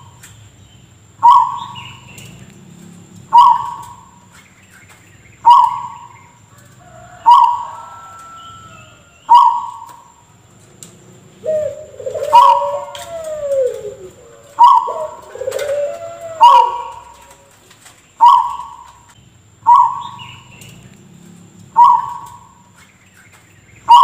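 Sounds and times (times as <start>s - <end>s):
dove wavering coos: 1.0s - 4.3s, 5.3s - 22.8s
dove cough-like calls: 1.2s - 2.5s, 3.2s - 4.2s, 5.4s - 6.2s, 9.3s - 10.0s, 11.4s - 17.6s, 18.2s - 19.1s, 19.7s - 20.8s, 21.7s - 22.6s.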